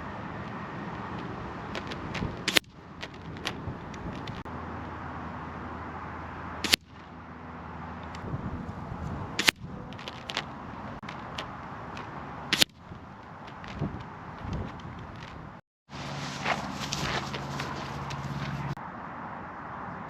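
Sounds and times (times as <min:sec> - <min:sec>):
air rifle shots: 0:01.8 - 0:02.8, 0:06.6 - 0:07.0, 0:09.4 - 0:09.6, 0:12.5 - 0:12.8.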